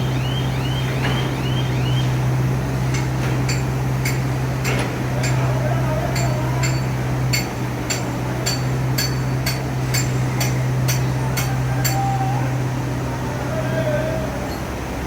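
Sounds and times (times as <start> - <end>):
low hum of machinery: 0.0 - 15.0
hammer striking steel: 2.9 - 5.5, 6.1 - 12.1.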